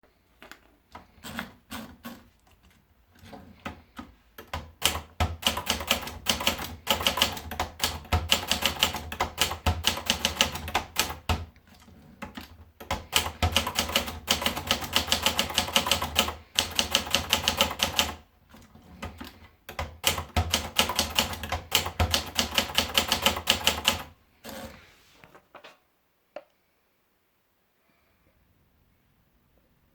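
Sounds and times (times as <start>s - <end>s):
manual typewriter key strikes: 4.4s - 11.5s, 12.3s - 18.2s, 19.0s - 24.1s.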